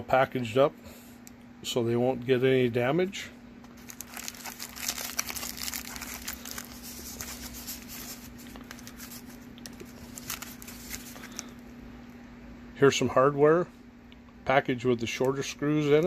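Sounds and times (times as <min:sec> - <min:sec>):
packaging crinkling: 0:03.7 - 0:11.6.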